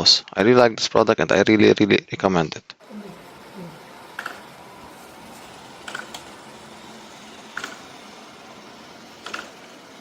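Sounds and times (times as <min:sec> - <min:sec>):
robot vacuum whirring: 0:02.8 - 0:10.0.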